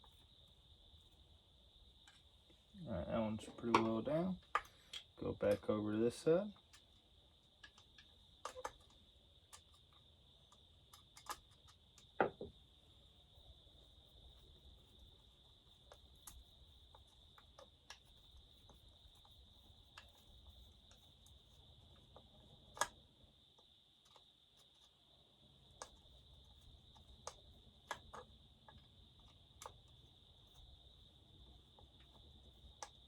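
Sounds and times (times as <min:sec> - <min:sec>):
hand tools clicking and tapping: 0:03.4 - 0:05.8, 0:06.6 - 0:12.2, 0:25.7 - 0:30.7, 0:31.7 - 0:33.0.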